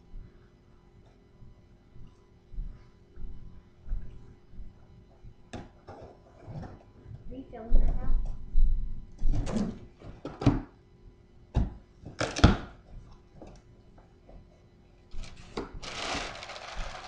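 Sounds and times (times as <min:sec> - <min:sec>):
packaging rustling: 0:15.2 - 0:17.0.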